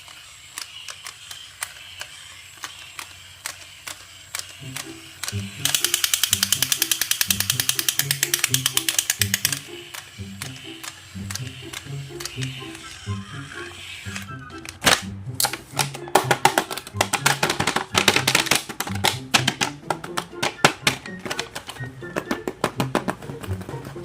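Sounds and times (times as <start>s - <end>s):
sharp clicks: 0.0s - 13.0s
fast even ticks: 2.6s - 12.9s
background music: 4.6s - 24.0s.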